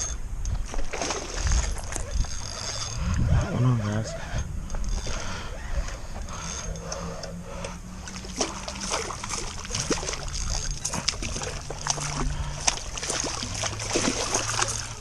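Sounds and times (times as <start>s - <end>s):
fish splashing at water surface: 0.7s - 2.0s, 8.0s - 15.0s.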